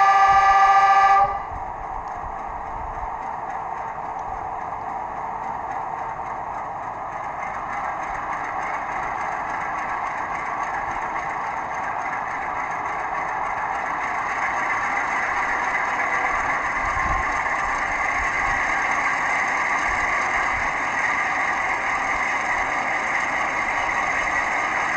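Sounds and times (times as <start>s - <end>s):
diesel locomotive engine from speaker: 0.0s - 24.9s.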